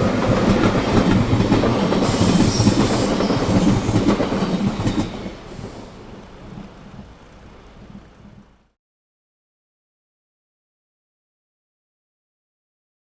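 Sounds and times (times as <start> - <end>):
high hiss: 0.0 - 8.6
train rumbling on rails: 0.0 - 8.7.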